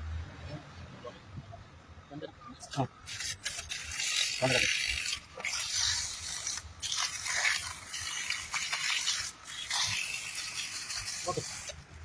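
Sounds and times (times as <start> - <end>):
scraping and rubbing: 2.6 - 12.0.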